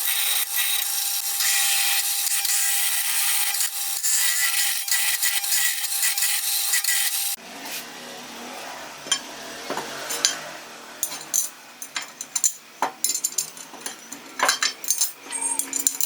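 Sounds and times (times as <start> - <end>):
metal tools clinking: 11.0 - 16.0.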